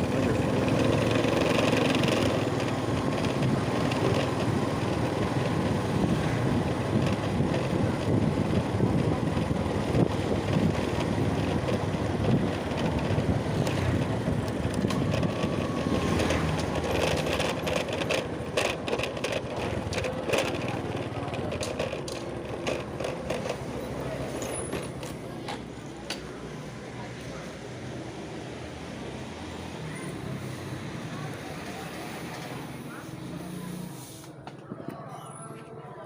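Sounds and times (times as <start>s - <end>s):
small engine running: 0.0s - 6.0s, 9.9s - 24.2s
clicks and rattles: 10.4s - 26.3s.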